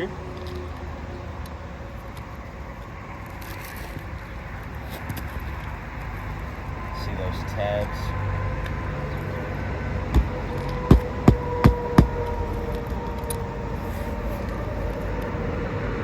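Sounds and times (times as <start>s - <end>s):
steady background hum: 0.0s - 16.0s
nails hammered into shingle: 10.2s - 12.2s.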